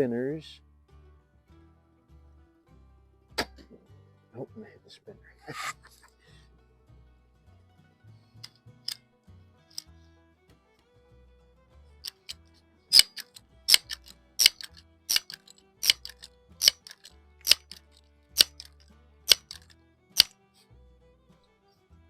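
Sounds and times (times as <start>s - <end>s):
quiet background music: 0.0s - 22.0s
air gun pump clacks: 9.7s - 9.9s, 12.0s - 20.3s.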